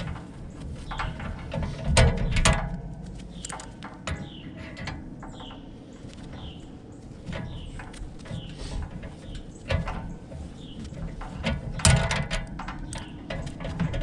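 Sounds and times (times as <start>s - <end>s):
metal clank: 0.0s - 5.6s, 7.2s - 14.0s
wrench metal clicks and clinks: 3.3s - 3.8s.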